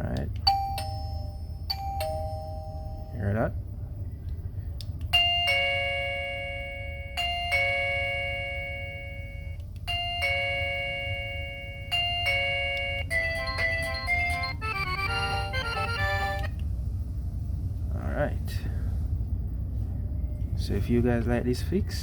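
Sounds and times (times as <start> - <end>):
electronic two-tone ding-dong chime: 0.5 - 3.2, 5.2 - 16.4
quick electronic tune: 12.7 - 16.5.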